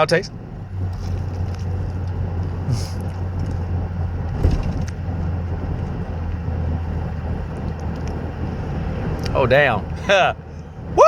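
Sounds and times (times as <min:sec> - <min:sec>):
car idling hum: 0:00.0 - 0:11.0.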